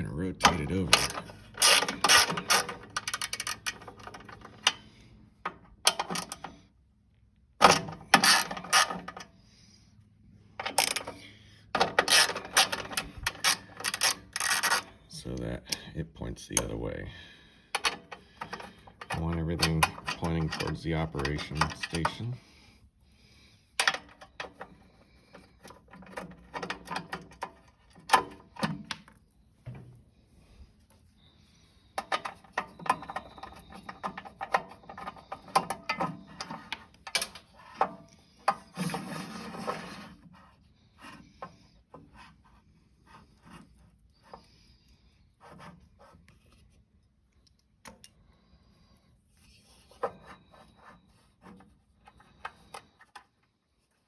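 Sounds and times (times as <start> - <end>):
metal parts clicking and clinking: 0.4 - 4.8, 7.6 - 9.3, 10.6 - 11.2, 11.8 - 14.9, 32.0 - 37.5.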